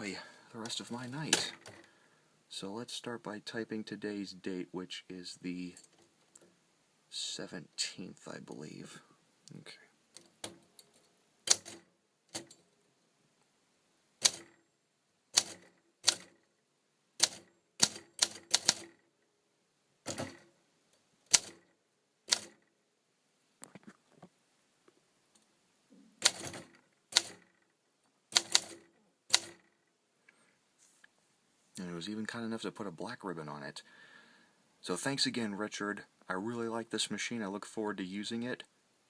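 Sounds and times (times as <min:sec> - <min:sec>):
manual typewriter keystrokes: 0:11.5 - 0:12.6, 0:14.2 - 0:14.5, 0:15.4 - 0:16.4, 0:17.2 - 0:19.0, 0:21.3 - 0:21.6, 0:22.3 - 0:22.6, 0:26.2 - 0:27.5, 0:28.3 - 0:29.7.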